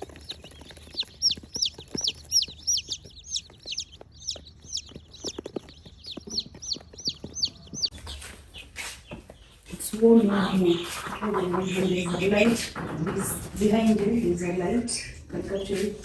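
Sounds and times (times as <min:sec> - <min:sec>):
chicks peeping: 0:00.0 - 0:16.0.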